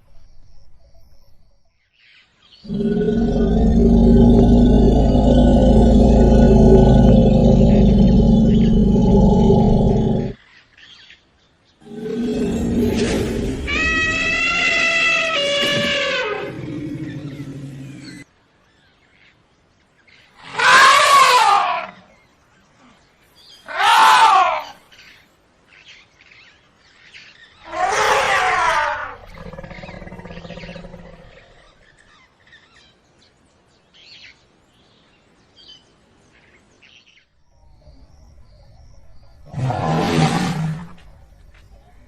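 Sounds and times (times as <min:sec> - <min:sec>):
elephant low rumble: 0:02.7 - 0:10.4, 0:11.9 - 0:18.2, 0:27.7 - 0:31.8, 0:37.6 - 0:42.0
elephant trumpeting: 0:11.9 - 0:18.2, 0:20.4 - 0:22.0, 0:23.7 - 0:24.8, 0:27.6 - 0:31.2.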